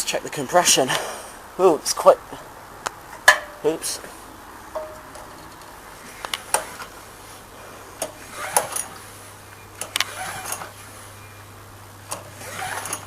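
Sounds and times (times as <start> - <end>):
engine pull-cord starter rattling: 8.0 - 9.0, 9.8 - 10.8, 12.1 - 13.0.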